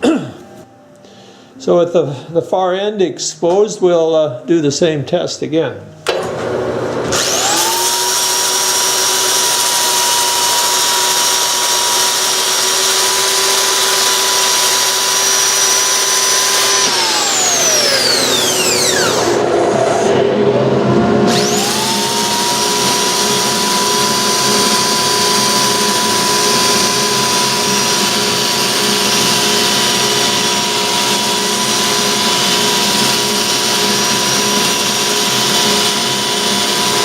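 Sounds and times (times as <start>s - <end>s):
wood lathe running: 6.1s - 20.2s, 21.2s - 37.0s
motor whine: 6.4s - 37.0s
dust collection suction: 7.1s - 20.2s.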